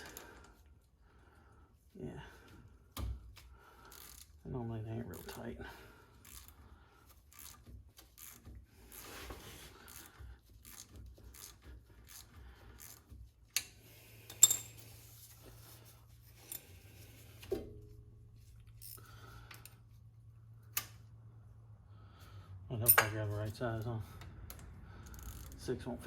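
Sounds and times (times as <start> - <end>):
ringing metal clink: 14.4 - 14.8, 22.8 - 23.3.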